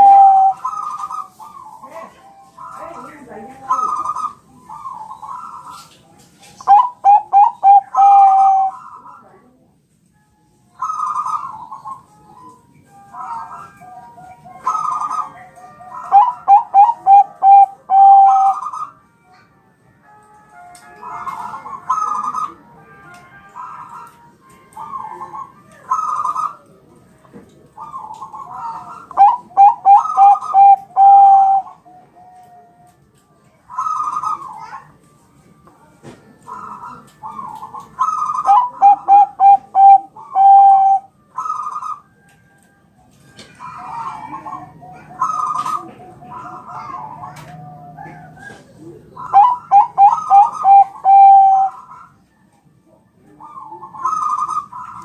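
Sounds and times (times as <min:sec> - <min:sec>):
dove cooing: 0:00.0 - 0:05.9, 0:06.5 - 0:09.6, 0:10.8 - 0:19.4, 0:21.0 - 0:22.7, 0:24.8 - 0:26.9, 0:27.6 - 0:32.7, 0:33.7 - 0:35.0, 0:36.4 - 0:42.2, 0:43.4 - 0:55.0.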